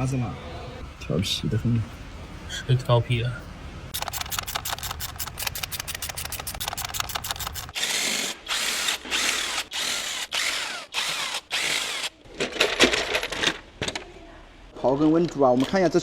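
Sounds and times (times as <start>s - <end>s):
power tool rapid clicking: 4.0s - 12.1s.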